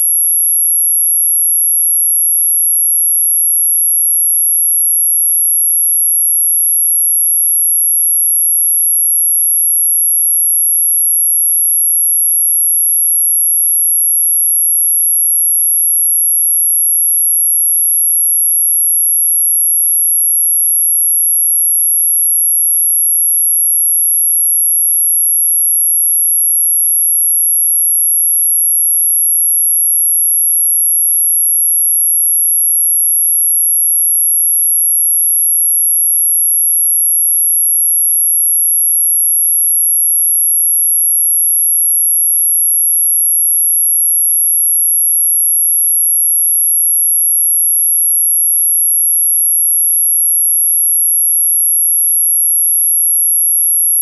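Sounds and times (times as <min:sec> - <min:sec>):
high-pitched sine tone: 0:00.0 - 0:03.4.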